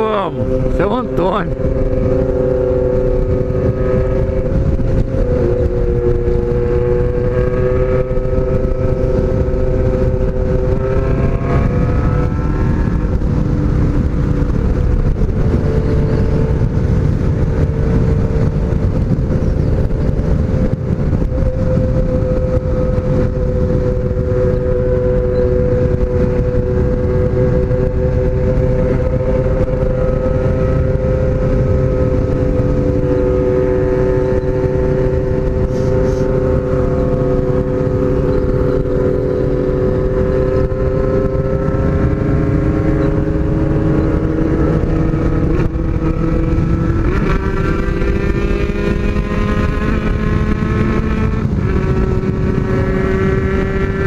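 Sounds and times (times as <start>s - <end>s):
motorcycle engine cruising: 0.0s - 54.0s
wind noise rushing: 0.0s - 54.0s.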